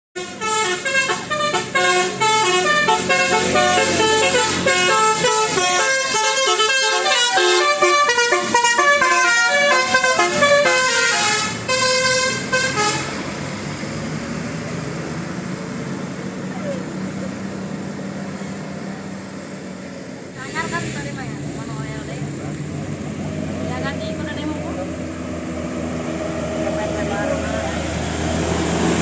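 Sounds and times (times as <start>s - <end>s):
multi-trumpet air horn tune: 0.2s - 13.2s.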